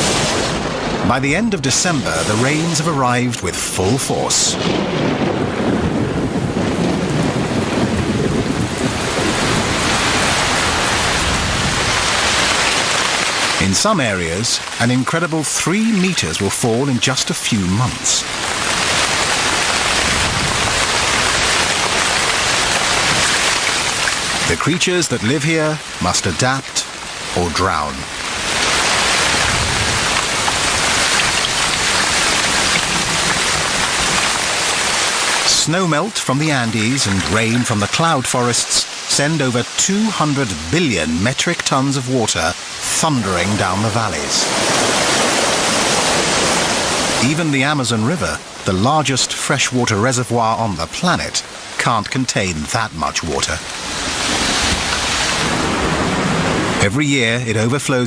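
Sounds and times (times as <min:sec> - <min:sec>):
heavy rain pouring: 0:00.0 - 0:58.0
low rumble of thunder: 0:04.5 - 0:12.1, 0:29.3 - 0:34.2.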